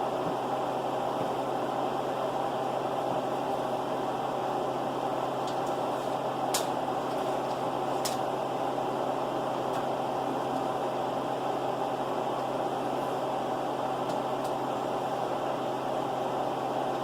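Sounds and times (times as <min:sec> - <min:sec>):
fan appliance whirring: 0:00.0 - 0:17.0.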